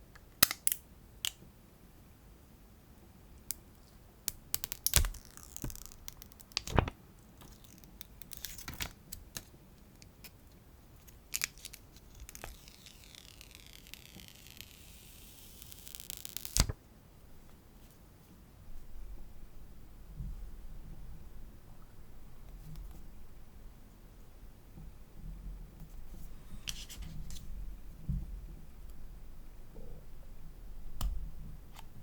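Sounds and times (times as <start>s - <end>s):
plastic packaging tearing and crinkling: 4.6s - 9.0s, 11.3s - 16.7s.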